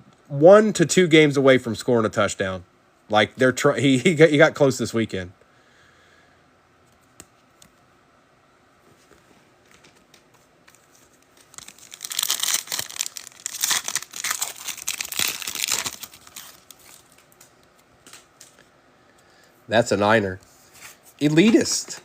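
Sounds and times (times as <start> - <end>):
foil wrapper tearing and crinkling: 11.4 - 17.4.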